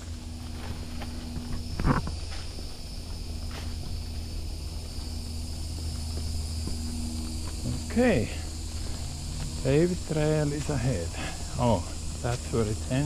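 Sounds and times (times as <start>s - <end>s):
footsteps on woodland trail: 0.0s - 13.0s
insect buzzing: 0.0s - 13.0s.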